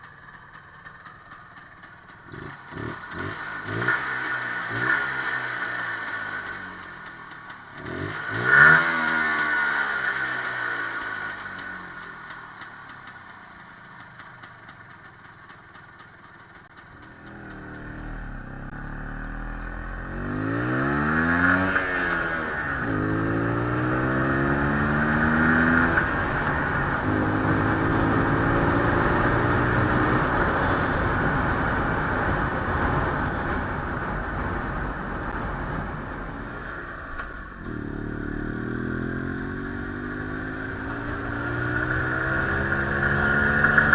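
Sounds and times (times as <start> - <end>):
engine knock: 0.0 - 3.3, 10.3 - 18.1
motorcycle engine revving: 0.0 - 43.9.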